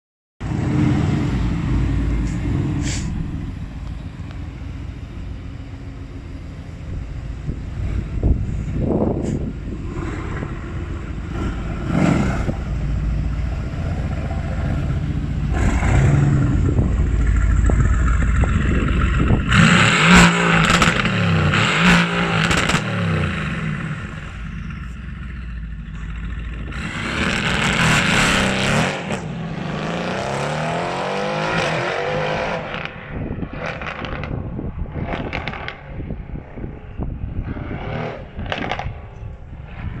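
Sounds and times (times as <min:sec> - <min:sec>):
wind buffeting microphone: 0:00.6 - 0:27.4, 0:32.7 - 0:40.0
exhaust crackling and popping: 0:07.1 - 0:29.3, 0:32.8 - 0:36.2, 0:37.4 - 0:40.0
car engine accelerating hard: 0:07.4 - 0:33.0.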